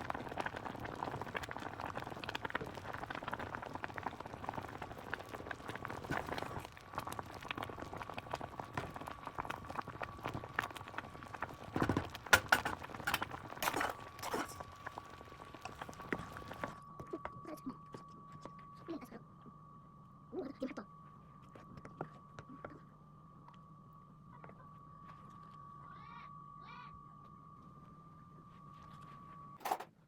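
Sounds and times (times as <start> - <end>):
utensils knocking on cookware: 11.8 - 14.6
faint high tone: 16.7 - 29.6.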